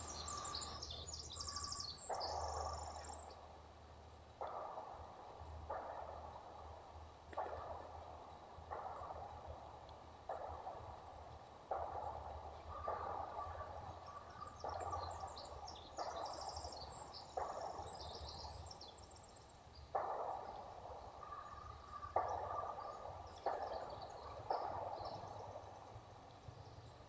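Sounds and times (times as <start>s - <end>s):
small birds chirping: 0.0s - 3.5s, 11.8s - 27.0s
distant echoing gunshots: 0.0s - 3.7s, 4.3s - 26.2s.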